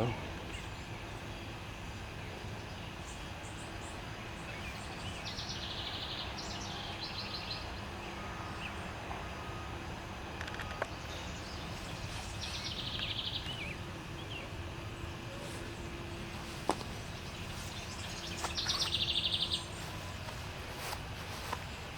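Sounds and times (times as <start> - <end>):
low outdoor rumble: 0.0 - 21.9
songbird buzzy trill: 10.8 - 21.9.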